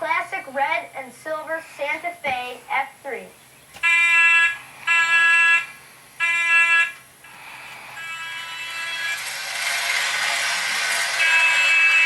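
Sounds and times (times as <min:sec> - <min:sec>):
toy train horn blasts: 0:03.8 - 0:07.0, 0:07.9 - 0:09.4, 0:11.1 - 0:12.0.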